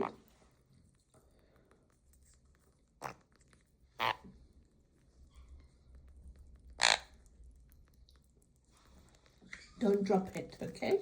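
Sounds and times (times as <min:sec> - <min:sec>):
parrot harsh calls: 0:04.0 - 0:04.3, 0:06.8 - 0:07.2.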